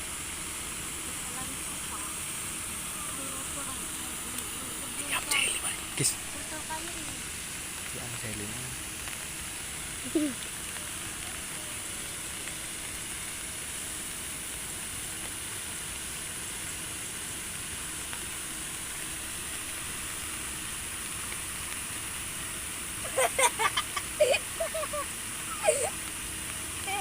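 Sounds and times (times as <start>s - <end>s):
outdoor background hiss: 0.0s - 27.0s.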